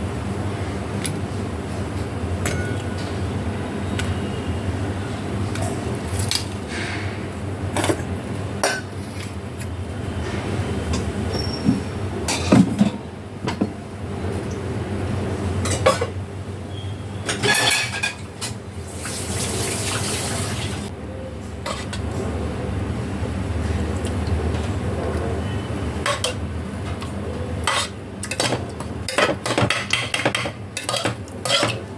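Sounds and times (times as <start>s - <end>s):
metal utensils and dishes clinking: 17.3s - 18.6s, 26.0s - 31.9s.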